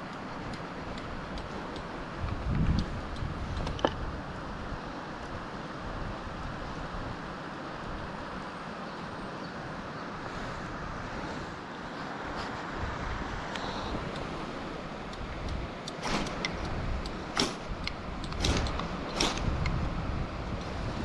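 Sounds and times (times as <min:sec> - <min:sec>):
rushing outdoor background noise: 0:00.0 - 0:21.0
sharp click: 0:15.1 - 0:19.8.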